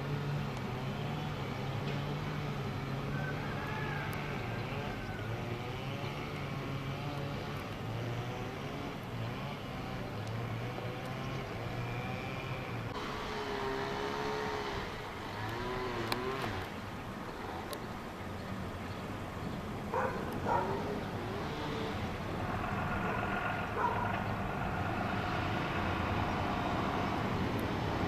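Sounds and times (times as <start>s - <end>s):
train locomotive humming: 0.0s - 28.0s.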